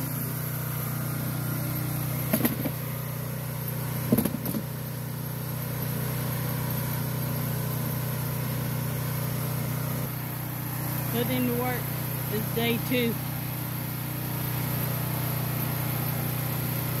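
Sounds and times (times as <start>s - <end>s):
small gas engine running: 0.0s - 17.0s
sharp knocks: 4.1s - 4.7s.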